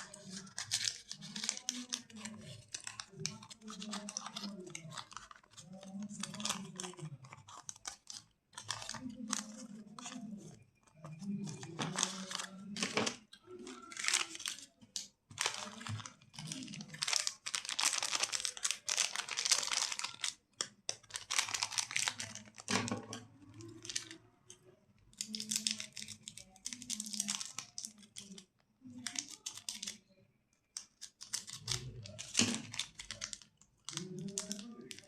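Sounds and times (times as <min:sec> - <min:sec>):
plastic wrappers crinkling: 0:00.0 - 0:24.2, 0:25.1 - 0:30.0, 0:30.8 - 0:35.0.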